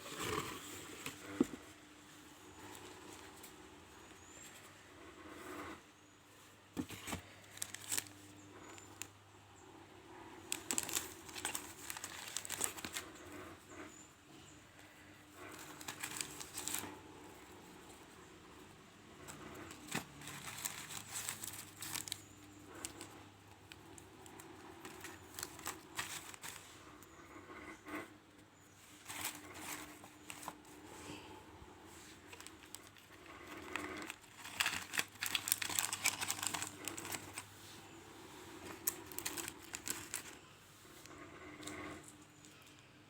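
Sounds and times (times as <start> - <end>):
packaging crinkling and rustling: 6.8 - 9.1, 10.5 - 13.2, 15.4 - 17.0, 19.2 - 26.8, 28.9 - 30.8, 32.0 - 37.6, 38.5 - 40.4
packaging tearing: 7.0 - 8.2, 10.5 - 13.0, 15.5 - 16.8, 19.3 - 23.1, 24.3 - 26.6, 32.3 - 37.4, 38.6 - 40.4.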